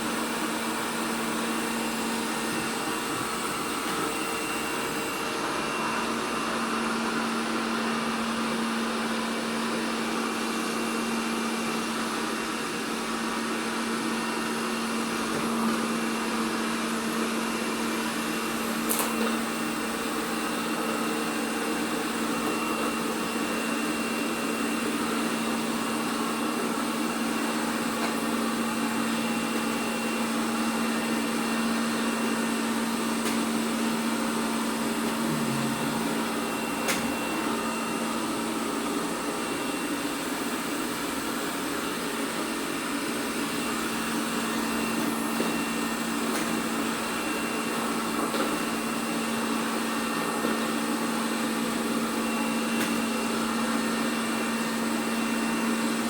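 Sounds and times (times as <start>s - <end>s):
robot vacuum running: 14.0s - 56.0s.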